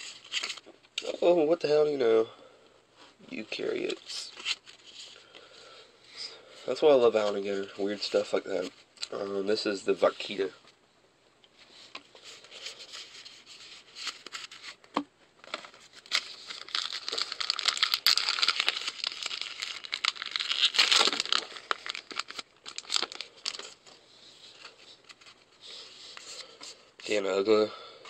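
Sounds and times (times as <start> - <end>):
foil wrapper tearing and crinkling: 15.6 - 23.8.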